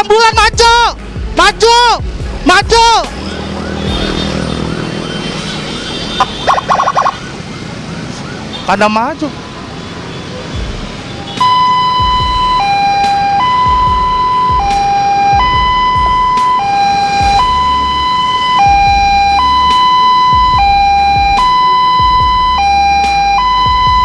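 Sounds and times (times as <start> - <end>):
two-tone emergency siren: 3.1 - 9.2, 11.4 - 24.0.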